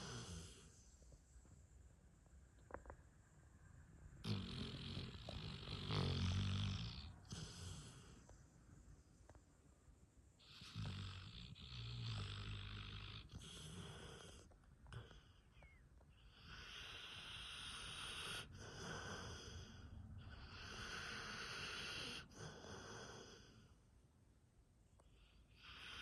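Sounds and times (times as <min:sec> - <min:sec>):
dog snoring: 0:00.0 - 0:00.9, 0:04.2 - 0:08.3, 0:10.4 - 0:23.8, 0:25.0 - 0:26.0.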